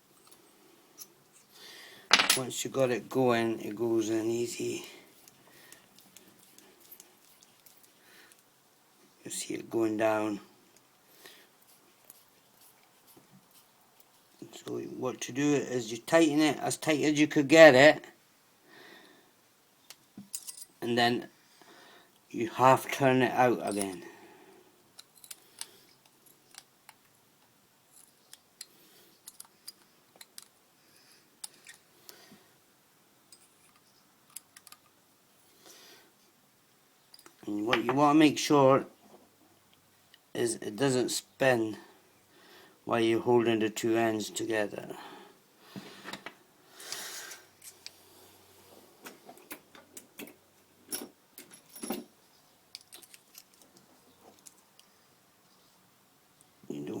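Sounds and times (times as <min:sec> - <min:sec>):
small parts clicking: 0:25.0 - 0:27.1, 0:27.9 - 0:30.6, 0:33.3 - 0:35.0, 0:52.7 - 0:54.9.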